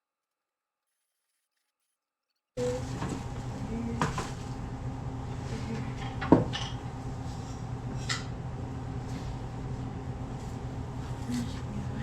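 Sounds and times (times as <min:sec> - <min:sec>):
steady low hum: 0:02.6 - 0:12.0.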